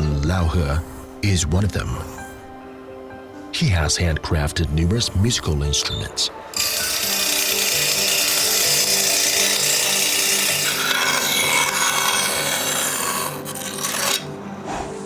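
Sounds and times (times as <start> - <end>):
soft background music: 0.0 - 15.0
tool rasping on wood: 6.5 - 14.3.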